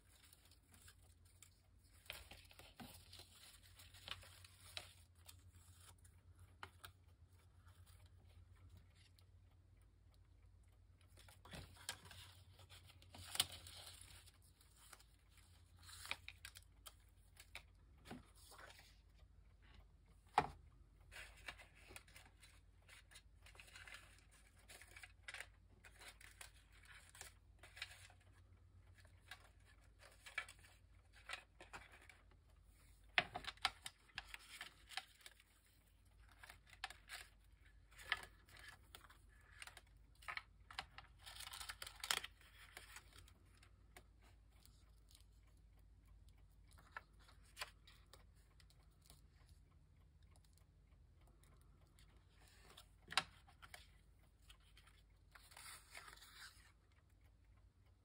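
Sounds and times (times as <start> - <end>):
paper rustling and crinkling: 0.0 - 9.2, 11.1 - 19.3, 20.3 - 43.7, 46.7 - 49.6, 52.3 - 56.8.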